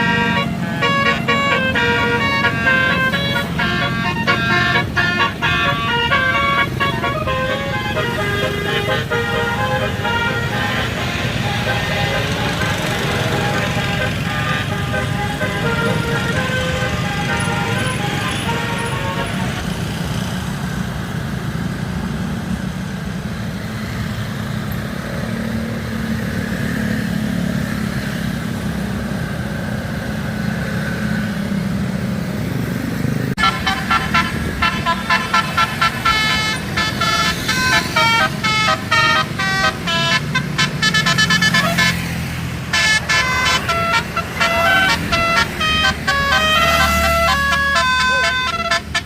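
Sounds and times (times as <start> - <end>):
multi-tone bus horn tune: 0.0 - 19.8, 33.4 - 49.0
bus engine rumbling: 0.0 - 49.0
passing traffic: 0.0 - 49.0.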